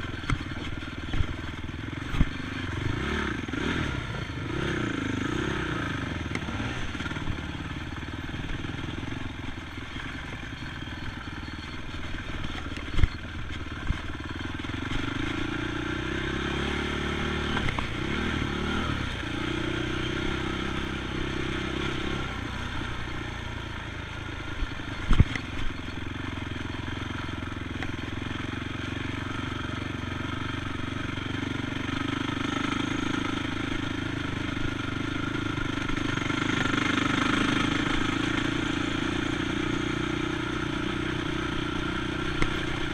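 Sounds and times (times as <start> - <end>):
atv engine revving: 0.0 - 42.9.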